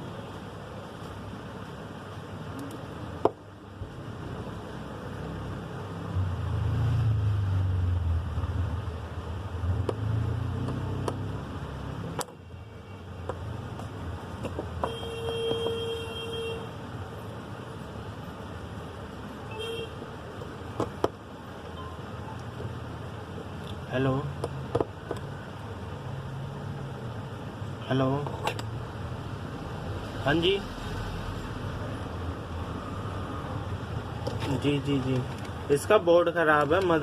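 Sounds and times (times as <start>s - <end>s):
vehicle passing rumble: 4.4s - 12.1s
vehicle horn toot: 14.8s - 16.7s, 19.5s - 20.0s.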